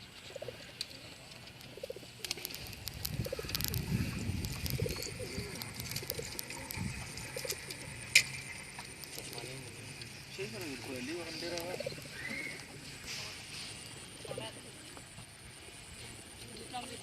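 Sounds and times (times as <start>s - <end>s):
pigeons cooing: 0.0s - 12.9s
sharp clicks: 0.8s - 10.2s.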